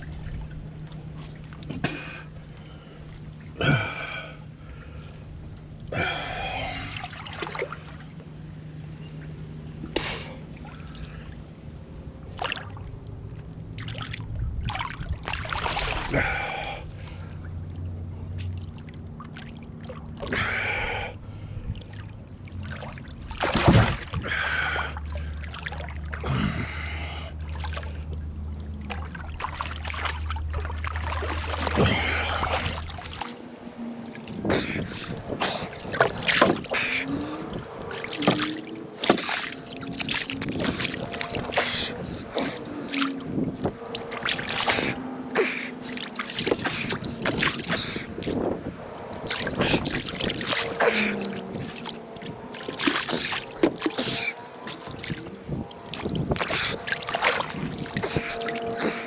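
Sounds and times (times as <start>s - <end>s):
low hum: 0.0s - 59.0s
water splashing and sloshing: 0.0s - 59.0s
hard breathing: 1.8s - 7.1s, 34.2s - 59.0s.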